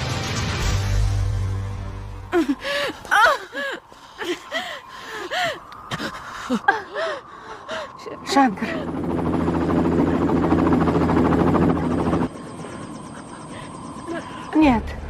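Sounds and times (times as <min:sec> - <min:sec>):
person gasping cries: 0:02.3 - 0:05.6.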